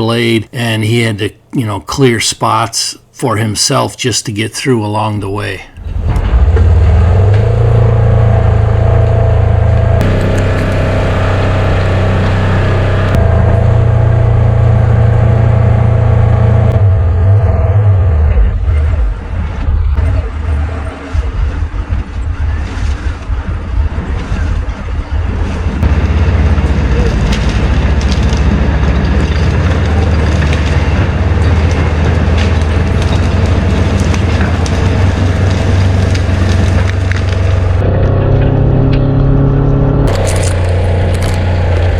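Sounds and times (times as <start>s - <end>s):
bulldozer diesel engine running: 5.8s - 21.8s, 25.1s - 41.9s
sharp cracks: 25.8s - 37.8s.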